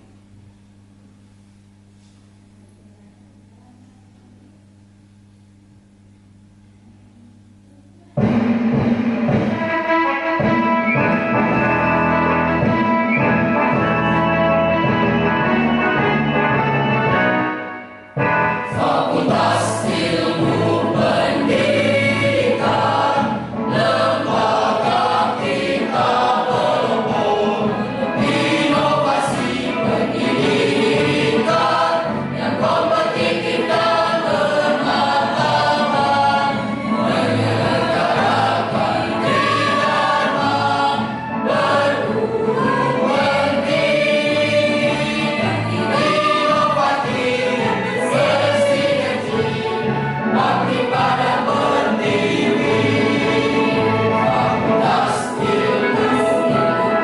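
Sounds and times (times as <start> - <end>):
choir singing: 18.6 - 57.0.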